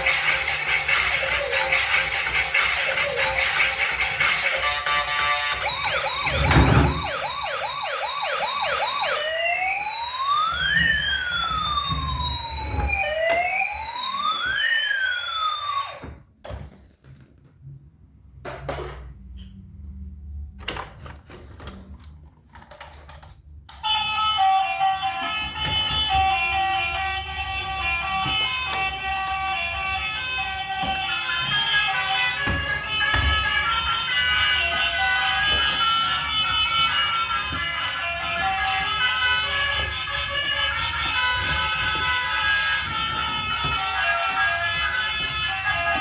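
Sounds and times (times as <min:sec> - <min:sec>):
music: 0:00.0 - 0:07.2, 0:23.9 - 0:46.0
electronic siren: 0:00.0 - 0:16.2, 0:23.8 - 0:46.0.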